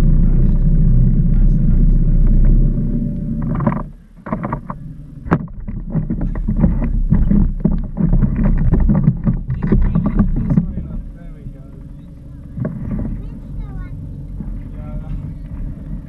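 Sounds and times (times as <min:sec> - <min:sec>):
low hum: 0:00.0 - 0:16.0
knocks on boat: 0:03.4 - 0:11.0.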